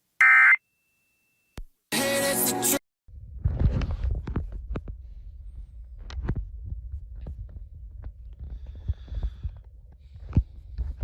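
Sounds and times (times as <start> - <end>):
low rumble: 3.1 - 11.0.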